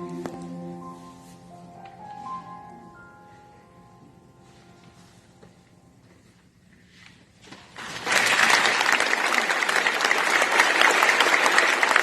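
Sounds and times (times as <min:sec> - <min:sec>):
audience applause: 0:07.8 - 0:12.0.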